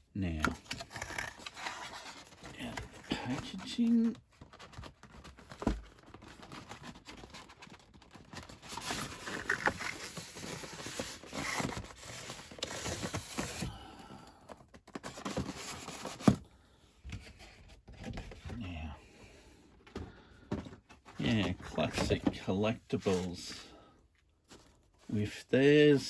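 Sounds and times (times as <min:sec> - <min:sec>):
plastic and polystyrene rustling: 0:01.2 - 0:13.7, 0:21.2 - 0:23.7.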